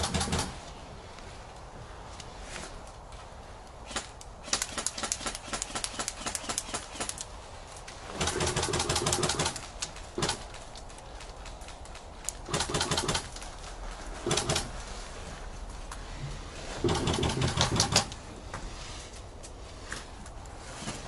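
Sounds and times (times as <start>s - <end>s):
airsoft guns firing: 0.0s - 0.6s, 8.1s - 10.5s, 12.5s - 13.3s.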